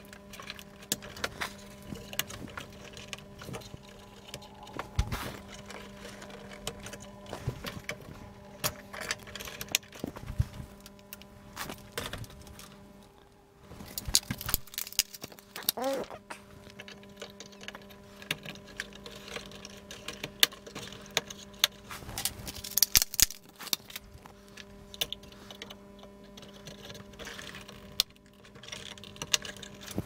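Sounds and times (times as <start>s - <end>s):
faint steady hum: 0.0s - 30.0s
plastic clicks and rattles: 25.0s - 30.0s.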